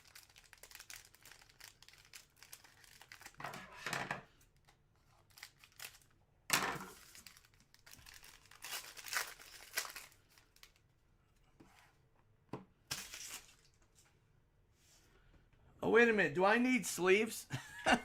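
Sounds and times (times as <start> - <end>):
plastic packaging tearing and crinkling: 0.0 - 3.6, 4.6 - 6.1, 6.8 - 10.8, 12.9 - 13.8.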